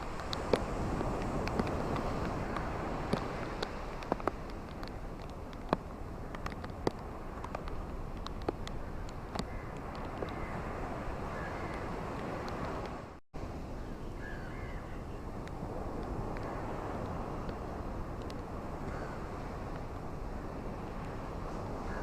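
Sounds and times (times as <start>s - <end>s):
ocean waves washing: 0.0s - 22.0s
faint bird calls: 13.8s - 15.2s.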